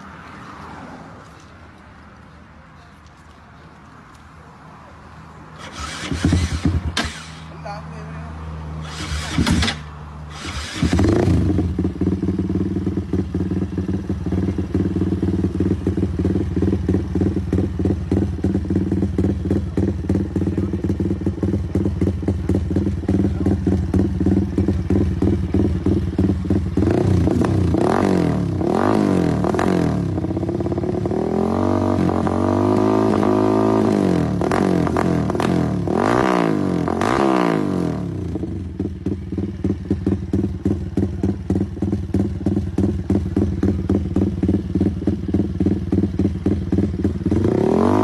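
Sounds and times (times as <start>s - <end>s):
motorcycle engine idling and revving: 5.1s - 48.0s.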